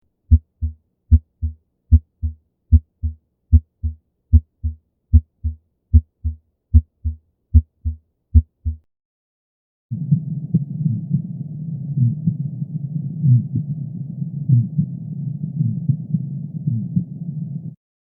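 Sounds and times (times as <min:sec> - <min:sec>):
heartbeat lub-dub: 0:00.3 - 0:08.8.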